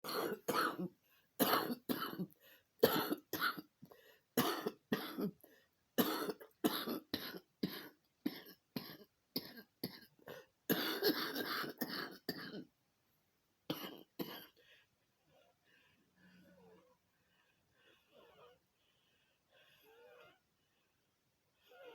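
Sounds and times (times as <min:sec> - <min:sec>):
person coughing: 0:00.0 - 0:03.7, 0:04.4 - 0:05.4, 0:06.0 - 0:12.7.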